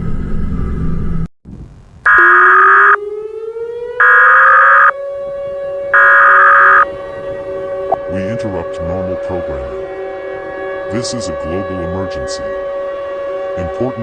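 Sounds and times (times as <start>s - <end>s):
digital data tone bursts: 2.1s - 3.0s, 4.0s - 4.9s, 6.0s - 6.8s
siren winding up: 2.1s - 3.2s, 3.8s - 5.0s, 5.9s - 6.9s.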